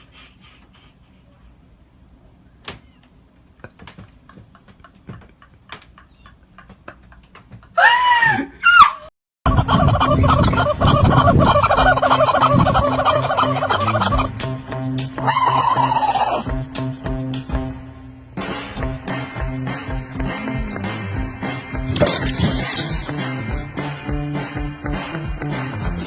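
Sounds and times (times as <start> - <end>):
rising and falling bird calls: 7.8 - 14.3, 15.2 - 16.5
fowl rattling call: 9.6 - 14.3.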